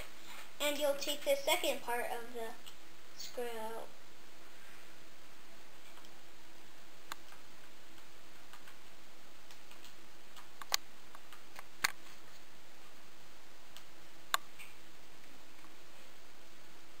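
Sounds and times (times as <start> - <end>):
faint steady hum: 0.0 - 17.0
sharp clicks: 7.0 - 12.0.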